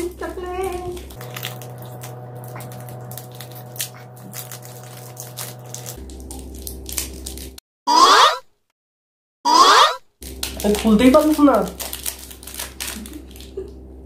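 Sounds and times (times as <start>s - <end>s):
faint steady hum: 0.0s - 7.5s
plastic wrapper crinkling: 0.2s - 7.6s, 10.2s - 13.8s
wrapper snapping as bitten: 0.9s - 7.6s, 10.2s - 13.8s.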